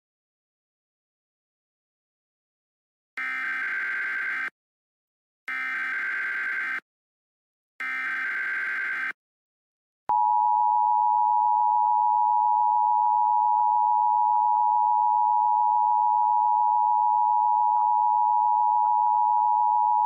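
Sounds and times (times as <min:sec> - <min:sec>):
buzzing digital data burst: 0:07.8 - 0:09.2.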